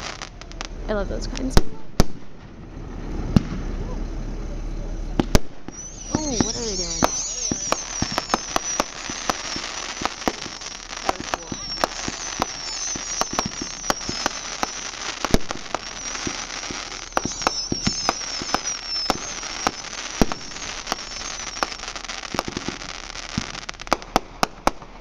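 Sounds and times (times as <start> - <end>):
fireworks bangs and crackles: 0.0 - 25.0
high wavering whistle: 5.6 - 23.8.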